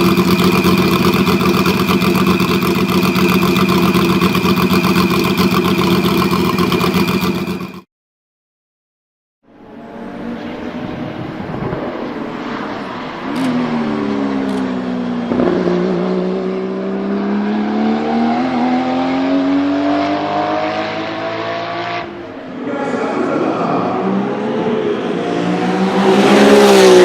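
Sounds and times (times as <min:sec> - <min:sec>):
race car engine accelerating: 0:00.0 - 0:07.8, 0:09.5 - 0:27.0.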